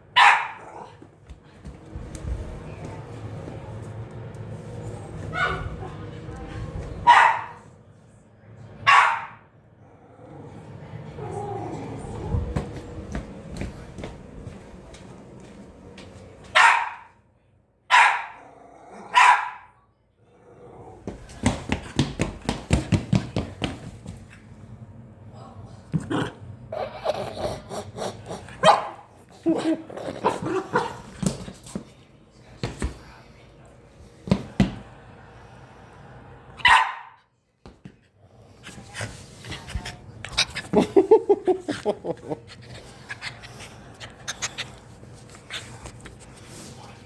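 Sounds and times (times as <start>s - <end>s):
puppy barking: 0.2s - 0.6s, 5.3s - 5.8s, 7.1s - 7.6s, 8.9s - 9.4s, 16.6s - 17.1s, 17.9s - 18.4s, 19.1s - 19.7s, 28.6s - 29.0s, 36.6s - 37.2s.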